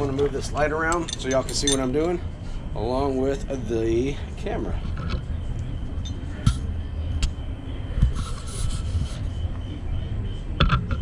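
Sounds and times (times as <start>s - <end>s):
steady low rumble: 0.0s - 11.0s
scraping rub: 8.0s - 9.4s.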